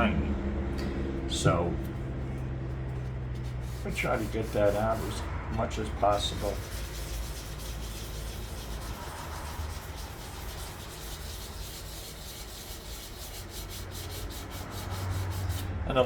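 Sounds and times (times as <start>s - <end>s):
sandpaper rubbing on metal: 2.9s - 15.7s.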